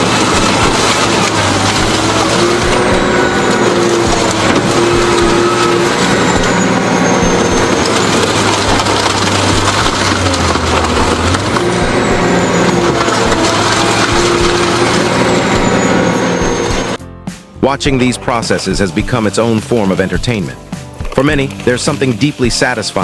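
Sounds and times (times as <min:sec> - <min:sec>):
heavy machinery grinding and crushing: 0:00.0 - 0:17.0.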